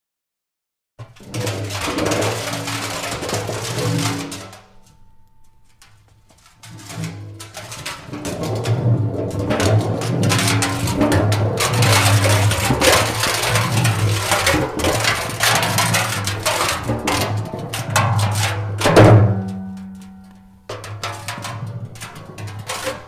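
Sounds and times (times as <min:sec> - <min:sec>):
metal barrel clattering: 0:01.0 - 0:23.0
metallic ring: 0:03.7 - 0:08.2.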